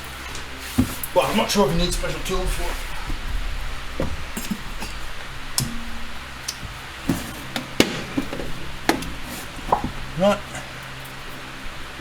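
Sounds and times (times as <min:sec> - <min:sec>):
low steady hum: 0:00.0 - 0:12.0
tools clicking and knocking: 0:05.6 - 0:10.0.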